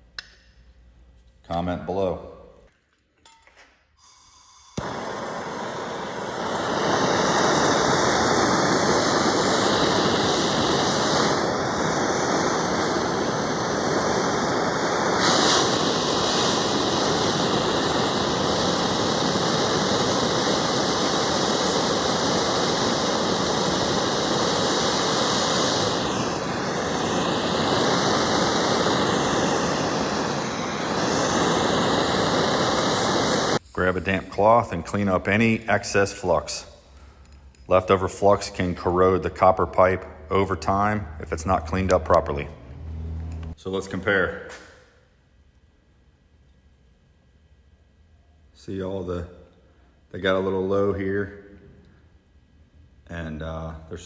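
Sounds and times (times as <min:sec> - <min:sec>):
torch flame hissing: 0:04.8 - 0:36.6, 0:38.0 - 0:43.6.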